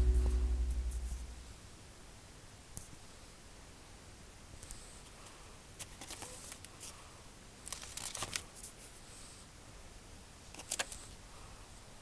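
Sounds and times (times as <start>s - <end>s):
paper rustling and crinkling: 5.8s - 6.9s, 7.7s - 8.8s
sketchbook pages turning: 7.7s - 8.5s.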